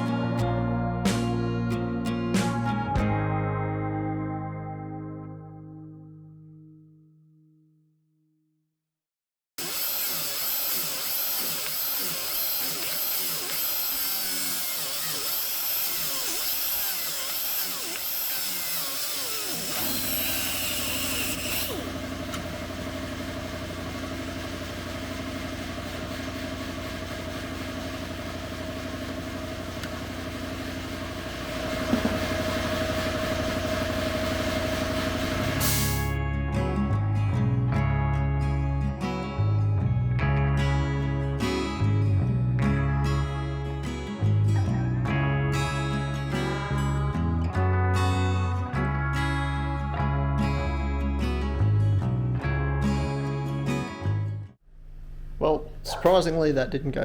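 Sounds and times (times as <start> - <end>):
power tool running: 9.6 - 36.2.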